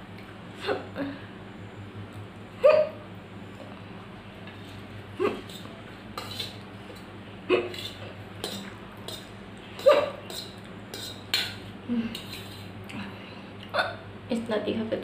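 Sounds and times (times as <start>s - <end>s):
woman hiccuping: 2.6s - 3.0s, 5.2s - 5.4s, 7.5s - 7.7s, 9.8s - 10.2s, 13.7s - 14.1s.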